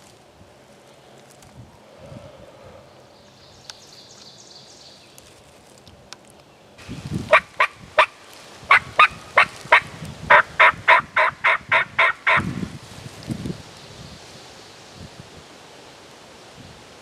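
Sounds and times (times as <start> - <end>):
wild turkey yelps: 8.7 - 12.4.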